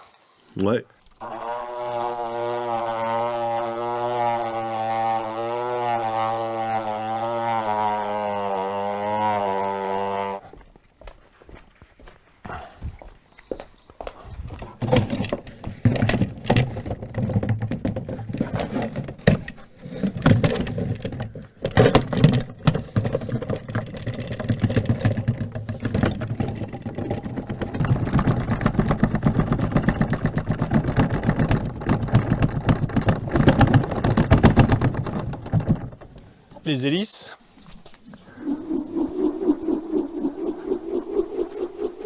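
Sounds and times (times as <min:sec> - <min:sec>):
fast mechanical rattle: 0:01.0 - 0:10.4, 0:14.5 - 0:36.5.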